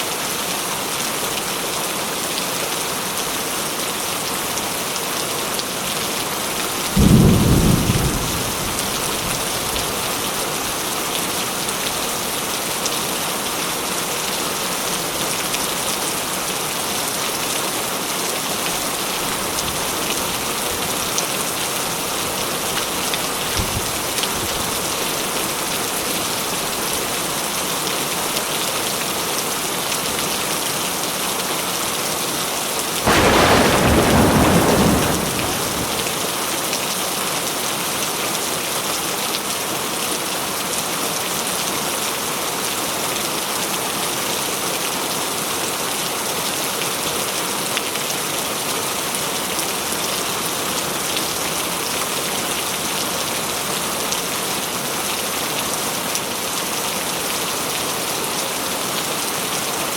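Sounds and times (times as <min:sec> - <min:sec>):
steady rain falling: 0:00.0 - 0:59.9
thunder clap and rumble: 0:06.9 - 0:10.0, 0:33.1 - 0:36.5.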